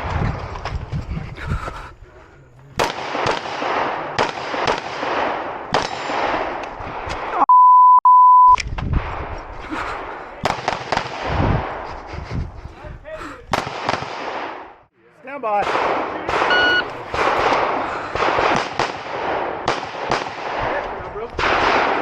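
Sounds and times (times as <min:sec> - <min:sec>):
shot timer beep: 0:07.5 - 0:08.6, 0:16.5 - 0:16.9.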